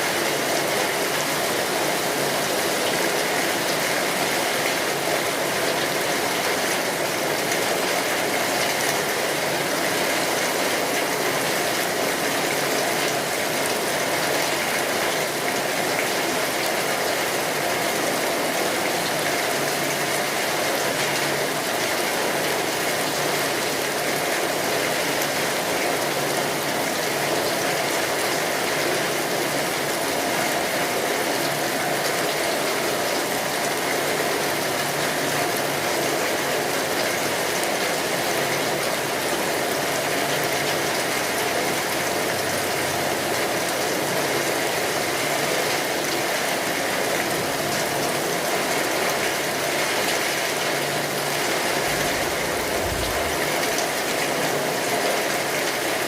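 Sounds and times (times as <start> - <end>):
heavy rain on a tin roof: 0.0 - 56.0
low rumble: 52.2 - 53.8.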